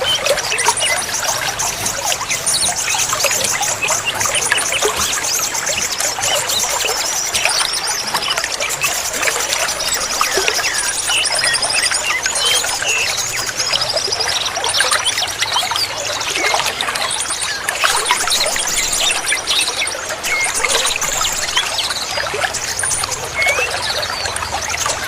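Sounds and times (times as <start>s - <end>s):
songbirds chirping and trilling: 0.0s - 25.0s
trickling water: 0.0s - 25.0s.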